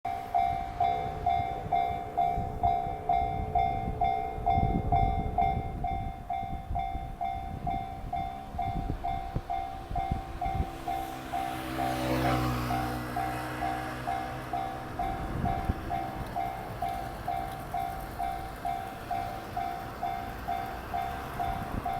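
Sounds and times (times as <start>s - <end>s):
level crossing warning bell: 0.1s - 21.9s
train rumble: 0.1s - 21.9s.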